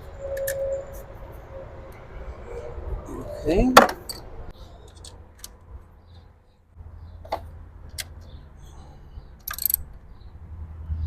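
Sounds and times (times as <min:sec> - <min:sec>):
parts clicking and knocking: 0:09.4 - 0:10.1.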